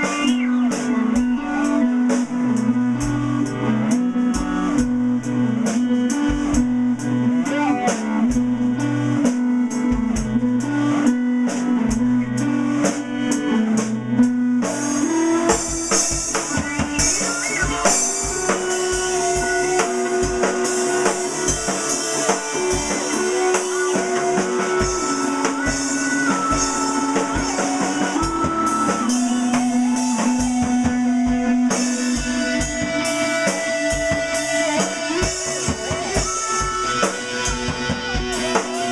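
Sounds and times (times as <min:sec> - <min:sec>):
rock music on guitars and drums: 0:00.0 - 0:38.9
cymbals: 0:14.7 - 0:38.9.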